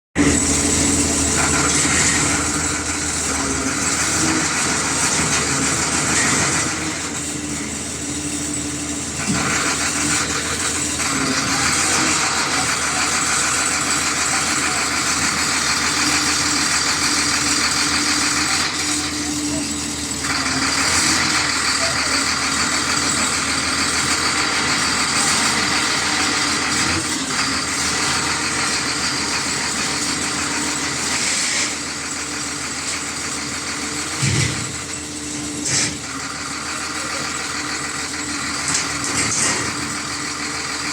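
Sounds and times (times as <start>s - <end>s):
vehicle engine running: 0.2s - 40.9s
people talking: 10.2s - 16.8s, 18.0s - 24.2s, 36.6s - 37.9s.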